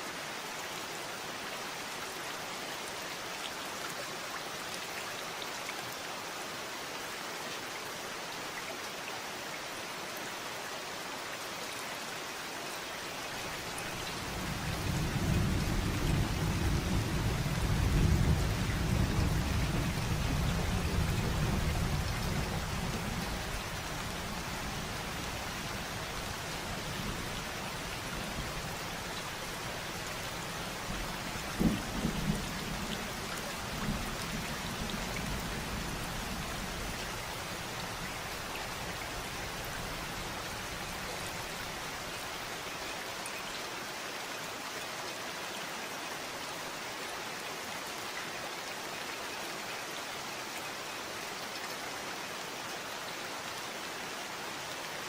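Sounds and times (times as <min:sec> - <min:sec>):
steady rain falling: 0:00.0 - 0:55.0
low rumble of thunder: 0:13.8 - 0:42.2.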